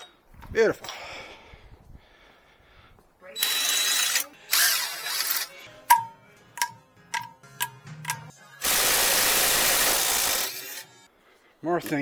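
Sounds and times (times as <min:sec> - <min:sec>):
light metallic clinks: 0:03.4 - 0:08.8
power tool running: 0:03.4 - 0:10.9.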